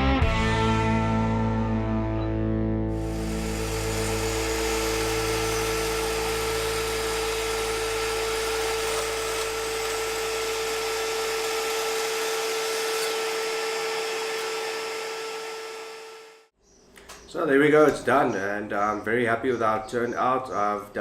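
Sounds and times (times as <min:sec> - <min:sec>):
power tool whining: 0:02.9 - 0:16.5.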